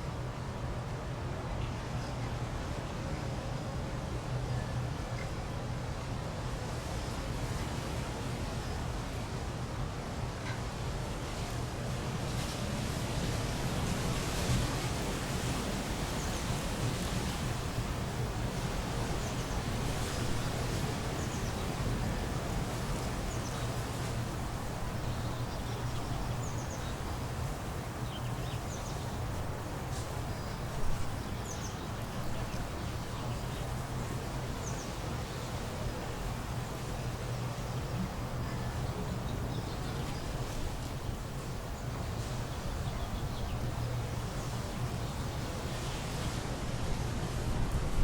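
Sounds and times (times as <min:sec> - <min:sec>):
steady hiss: 0:10.7 - 0:48.0.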